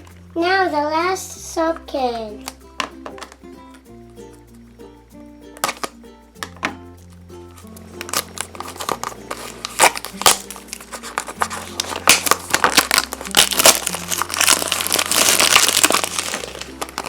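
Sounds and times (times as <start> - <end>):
light background music: 0.0 - 17.0
plastic packaging crinkling: 5.6 - 6.6, 7.6 - 17.0.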